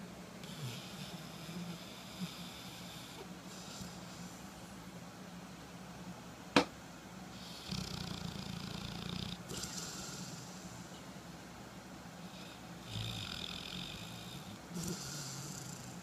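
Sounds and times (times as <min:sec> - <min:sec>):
person snoring: 0:07.4 - 0:10.7, 0:12.4 - 0:16.0.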